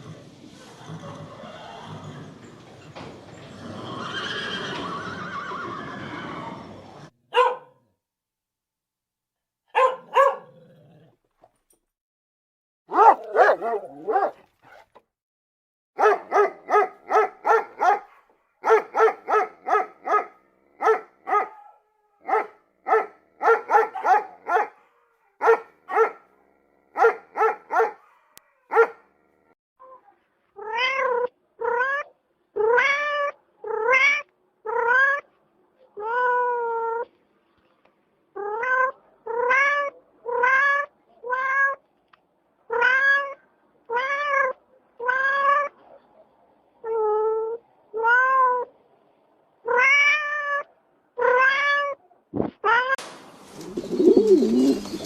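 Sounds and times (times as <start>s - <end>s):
small dog yapping: 7.3s - 7.7s, 9.8s - 10.6s, 12.9s - 14.4s
cat meowing: 30.6s - 35.3s, 38.4s - 41.8s, 42.7s - 45.8s, 49.7s - 52.0s.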